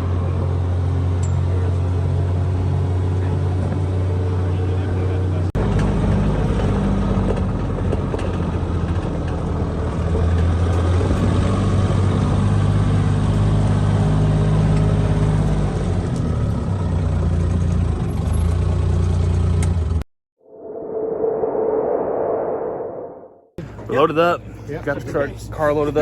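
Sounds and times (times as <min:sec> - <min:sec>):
vehicle engine hum: 0:00.0 - 0:20.0.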